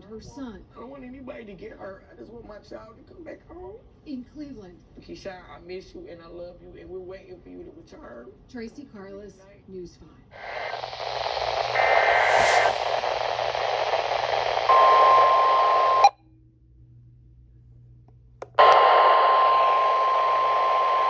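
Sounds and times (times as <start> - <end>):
high warning tone: 10.4 - 16.1, 18.6 - 21.0
radio static hiss: 10.4 - 16.1, 18.6 - 21.0
warbling data bursts: 10.4 - 16.1.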